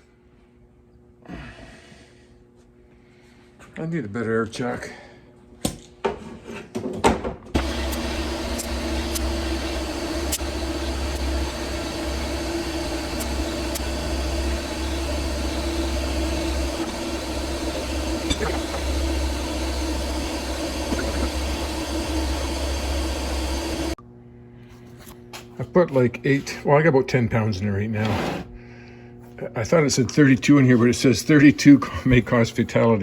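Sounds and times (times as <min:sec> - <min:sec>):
air compressor humming: 0:07.6 - 0:24.0.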